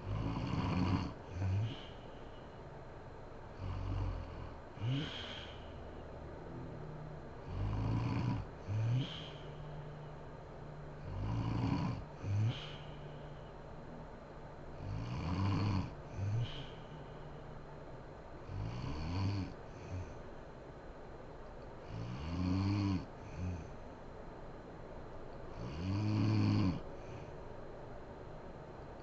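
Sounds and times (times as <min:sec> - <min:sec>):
woman snoring: 0:00.0 - 0:02.2, 0:03.6 - 0:05.9, 0:07.4 - 0:09.8, 0:11.0 - 0:13.2, 0:14.8 - 0:17.1, 0:18.5 - 0:20.2, 0:21.8 - 0:23.7, 0:25.6 - 0:27.3.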